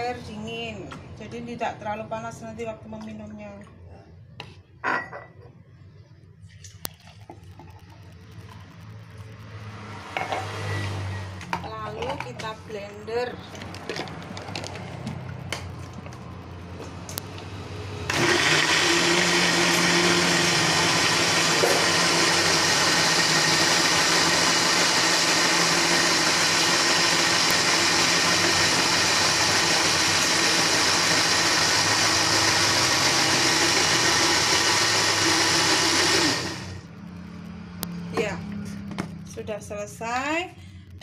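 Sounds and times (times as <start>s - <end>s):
electric blender running: 17.8s - 36.8s.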